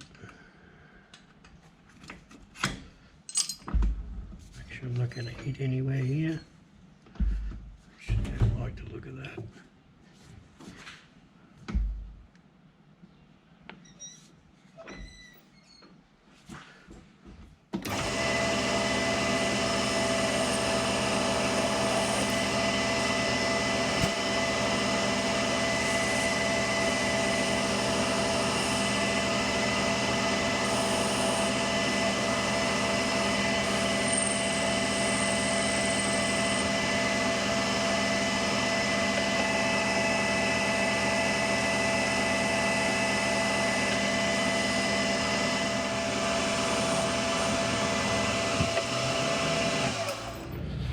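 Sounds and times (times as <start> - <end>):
metal lathe gear whine: 17.9 - 50.2.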